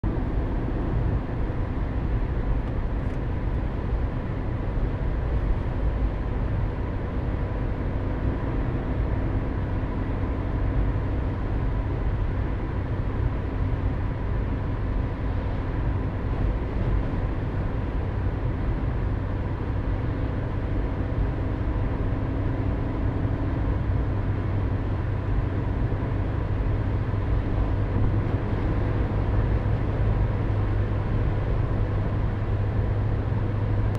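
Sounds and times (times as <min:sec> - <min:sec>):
car engine and road noise: 0:00.0 - 0:33.9.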